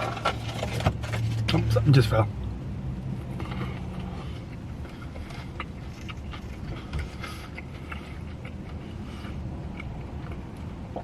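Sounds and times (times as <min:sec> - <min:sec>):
person chewing: 0:03.2 - 0:11.0.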